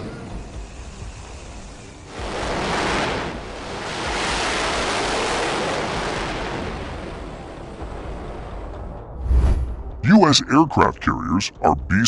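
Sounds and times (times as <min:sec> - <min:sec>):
ocean waves surging: 0:02.0 - 0:08.6.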